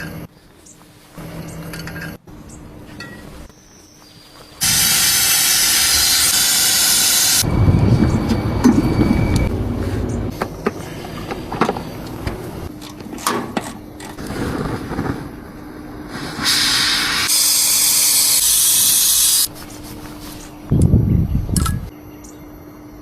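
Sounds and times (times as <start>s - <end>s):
refrigerant gas hissing: 4.6s - 7.6s, 16.0s - 19.5s
steady low hum: 4.6s - 16.4s.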